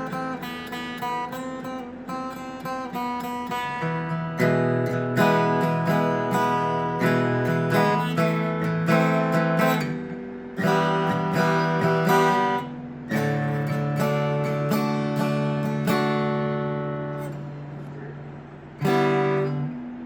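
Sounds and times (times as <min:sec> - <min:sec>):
acoustic guitar picked notes: 0:00.0 - 0:20.0
guitar chords strummed: 0:00.0 - 0:20.0.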